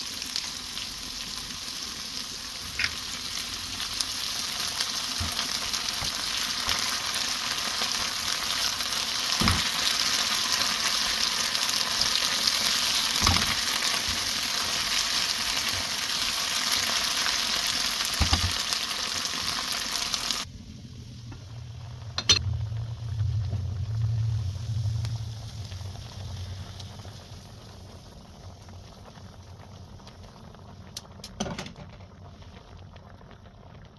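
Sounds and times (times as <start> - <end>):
food sizzling as it fries: 0.0 - 33.9
low hum: 20.4 - 29.3.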